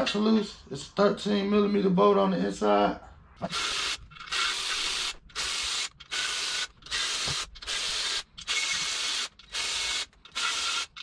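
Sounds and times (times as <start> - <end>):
ratchet wrench clicking: 3.5 - 11.0.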